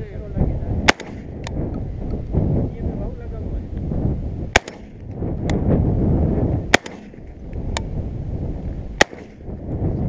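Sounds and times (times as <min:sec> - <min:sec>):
shotgun shots: 0:00.8 - 0:01.4, 0:04.5 - 0:05.1, 0:06.7 - 0:07.3, 0:09.0 - 0:09.5.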